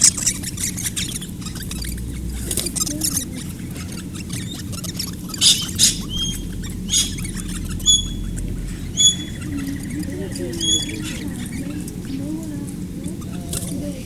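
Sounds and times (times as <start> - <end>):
shrill bird calls: 0.0 - 11.8
whistled bird notes: 0.0 - 12.3
claws and beaks scratching: 0.0 - 14.0.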